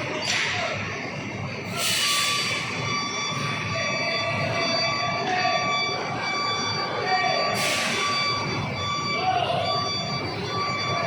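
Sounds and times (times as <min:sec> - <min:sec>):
air brakes hissing: 0:01.7 - 0:02.6, 0:07.6 - 0:08.1.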